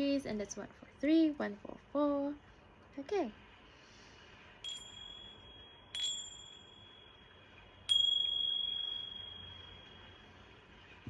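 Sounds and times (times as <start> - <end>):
small high-pitched bell ringing: 4.6 - 10.6.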